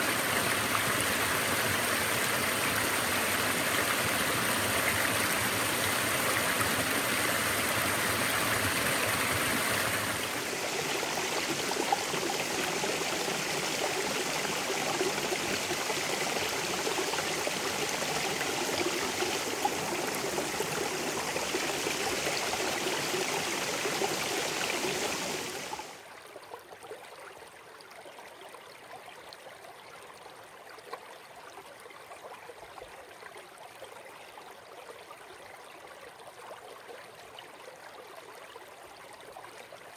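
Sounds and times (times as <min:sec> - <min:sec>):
stream water rushing: 0:00.0 - 0:26.0.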